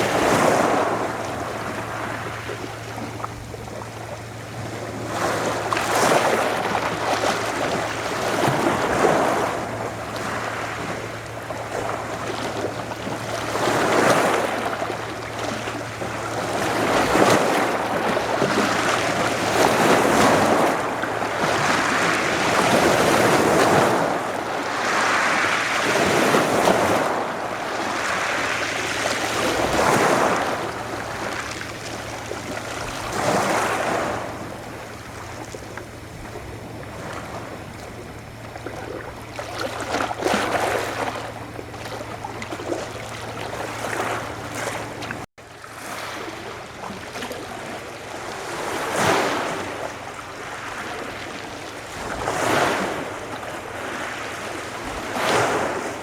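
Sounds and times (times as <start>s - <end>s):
steady low hum: 0.0s - 45.3s
waves washing onto shore: 0.0s - 56.0s.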